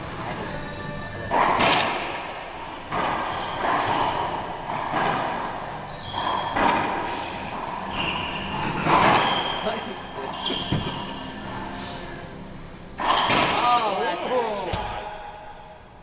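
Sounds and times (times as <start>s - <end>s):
ball cracking off racquets and walls: 1.3s - 9.6s, 13.0s - 13.7s.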